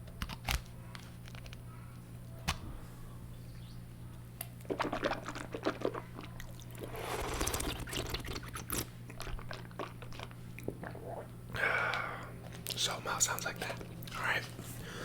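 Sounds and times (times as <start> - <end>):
wet tongue and lip clicks: 4.4 - 12.8
wet mouth swishing: 6.8 - 8.9.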